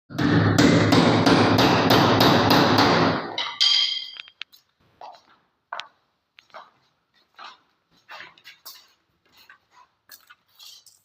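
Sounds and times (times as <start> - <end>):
rapid hammering: 0.1 - 3.4
short metallic ring: 3.6 - 4.3.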